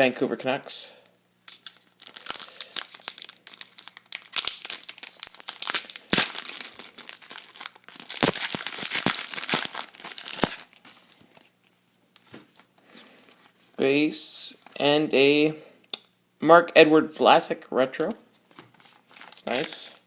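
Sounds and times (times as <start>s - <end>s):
foil wrapper crinkling and tearing: 1.5s - 11.5s, 18.9s - 20.0s.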